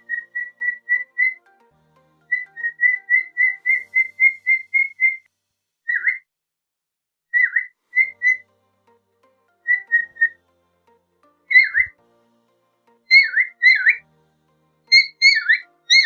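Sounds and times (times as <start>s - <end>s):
parrot whistling: 2.4s - 5.2s, 5.9s - 6.2s, 7.4s - 8.4s, 13.1s - 14.0s, 14.9s - 16.0s.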